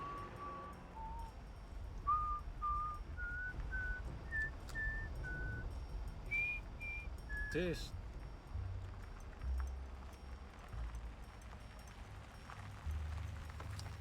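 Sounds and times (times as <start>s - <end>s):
person whistling a tune: 0.0s - 1.4s, 2.1s - 5.7s, 6.3s - 7.6s
low background rumble: 0.0s - 14.0s.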